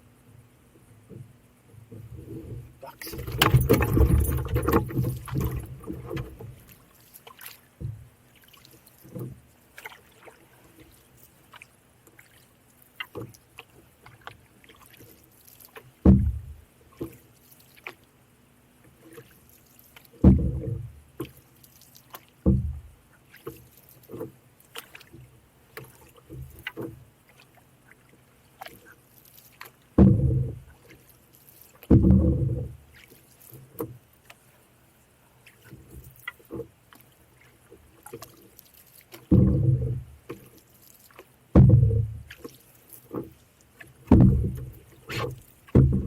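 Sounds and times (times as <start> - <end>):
paddle strokes in water: 0.7 - 46.0
thuds against canoe: 1.1 - 6.6, 7.8 - 8.1, 16.0 - 17.2, 20.2 - 21.3, 22.4 - 22.9, 30.0 - 30.8, 31.8 - 32.8, 39.2 - 40.5, 41.5 - 42.5, 43.1 - 46.0.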